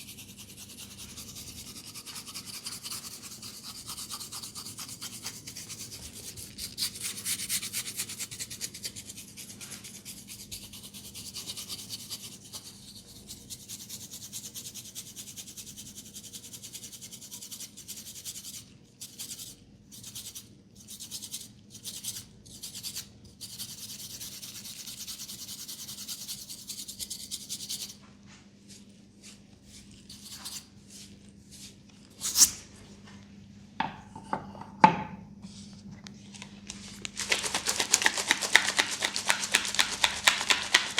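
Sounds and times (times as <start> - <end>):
hands rubbing hair: 36.7 - 40.9.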